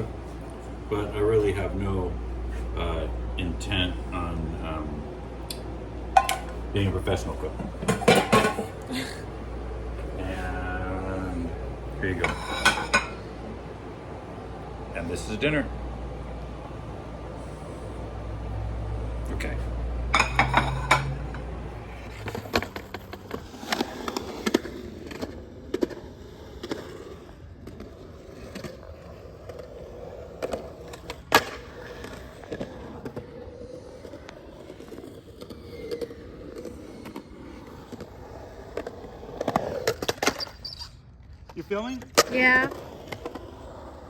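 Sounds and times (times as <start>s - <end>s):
skateboard wheels rolling on concrete: 0.0s - 44.0s
skateboard clacking on ground: 20.1s - 44.0s.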